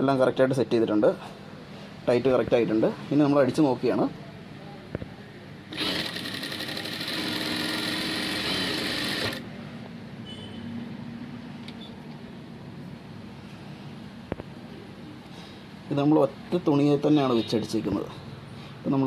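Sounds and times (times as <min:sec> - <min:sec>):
sewing machine stitching: 0:05.7 - 0:09.4.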